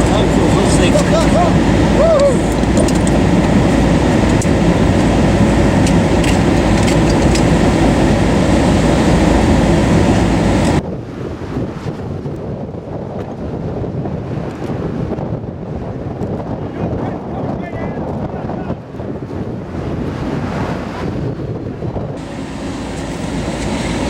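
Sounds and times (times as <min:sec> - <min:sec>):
strong wind rushing: 0:00.0 - 0:24.0
scattered ticks: 0:02.4 - 0:07.9.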